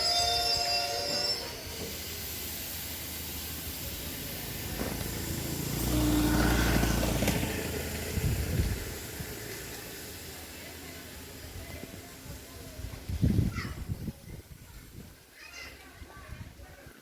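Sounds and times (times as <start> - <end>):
train wheel squeal: 0.0 - 2.2
train rail rumble: 0.0 - 15.2.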